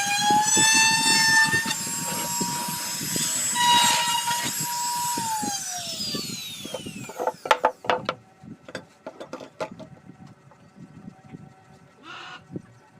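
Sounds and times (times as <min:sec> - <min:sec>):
router motor winding down: 0:00.0 - 0:07.6
sharp clicks and knocks: 0:06.7 - 0:09.9.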